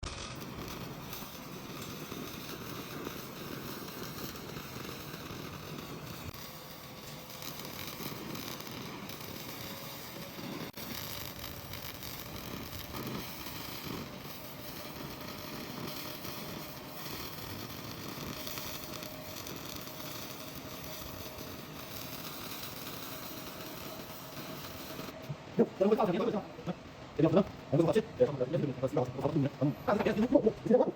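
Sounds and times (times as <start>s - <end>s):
laser cleaning machine crackling hiss: 0.0s - 30.9s
faint whine: 0.1s - 30.9s.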